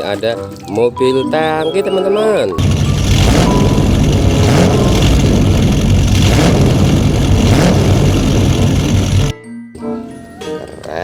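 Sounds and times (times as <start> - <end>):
motor running loudly: 2.6 - 9.3.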